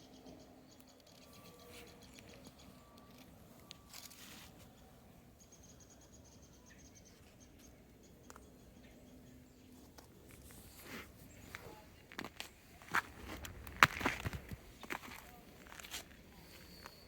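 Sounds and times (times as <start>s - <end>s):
footsteps crunching in snow: 10.3s - 17.0s.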